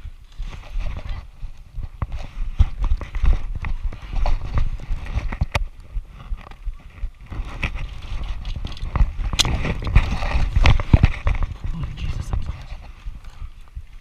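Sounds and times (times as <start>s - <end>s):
rattling gear: 6.2s - 13.7s.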